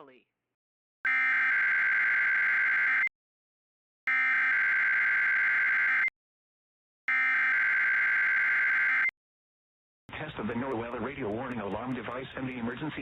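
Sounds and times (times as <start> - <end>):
screeching digital data tones: 1.1 - 3.1, 4.1 - 6.1, 7.1 - 9.1.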